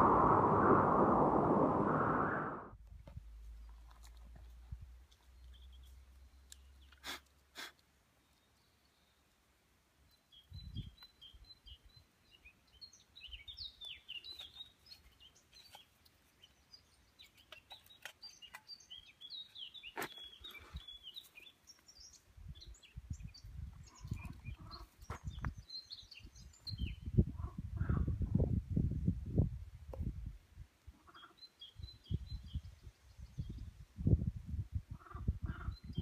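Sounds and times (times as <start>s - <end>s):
low rumbling bursts: 0.0s - 2.8s
small birds chirping: 5.1s - 28.0s, 31.0s - 33.8s.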